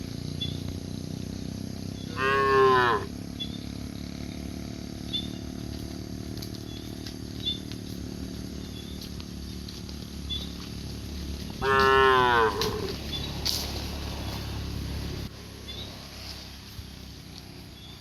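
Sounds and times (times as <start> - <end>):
cow mooing: 2.1 - 3.2, 11.6 - 13.0.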